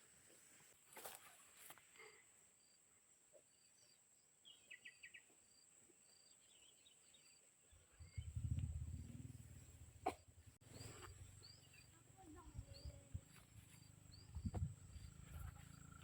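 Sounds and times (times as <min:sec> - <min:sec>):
insect chorus: 0:03.5 - 0:16.0.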